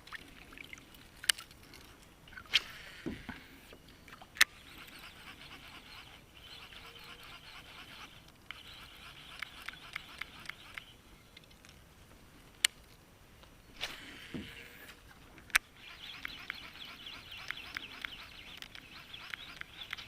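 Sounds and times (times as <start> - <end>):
rapid ticks: 4.4 - 11.0, 15.5 - 20.0
chattering animal calls: 4.5 - 11.0, 15.8 - 20.0.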